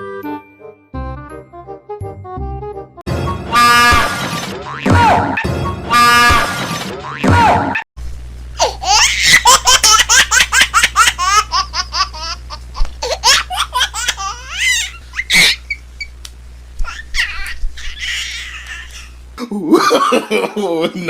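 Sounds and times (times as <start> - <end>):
steady low hum: 8.0 - 21.0
high-pitched laughter: 8.6 - 12.4, 13.0 - 15.8.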